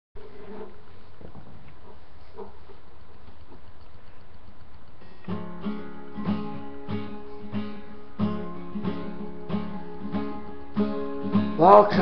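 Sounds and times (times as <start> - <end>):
acoustic guitar strumming: 5.0 - 12.0.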